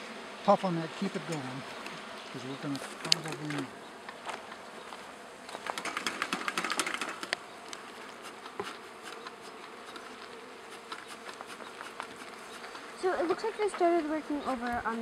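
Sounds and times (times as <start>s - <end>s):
honey bees buzzing: 0.0s - 15.0s
sharp clicks and scraping: 2.7s - 3.7s, 6.5s - 13.9s.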